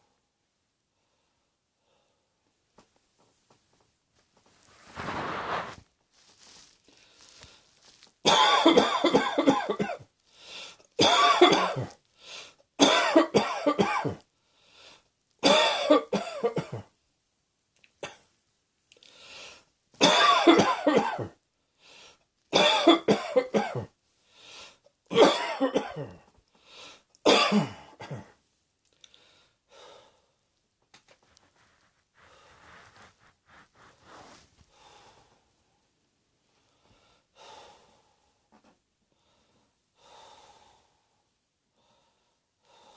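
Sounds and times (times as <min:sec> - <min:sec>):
quiet breaths: 0:00.0 - 0:08.2, 0:10.0 - 0:11.0, 0:11.9 - 0:12.8, 0:14.2 - 0:15.3, 0:18.9 - 0:19.8, 0:21.5 - 0:22.4, 0:24.0 - 0:25.0, 0:26.1 - 0:27.2, 0:28.8 - 0:42.9
person coughing: 0:08.3 - 0:10.0, 0:11.0 - 0:12.0, 0:12.8 - 0:14.2, 0:15.4 - 0:16.9, 0:20.0 - 0:21.4, 0:22.6 - 0:23.9, 0:25.1 - 0:26.2, 0:27.3 - 0:28.4.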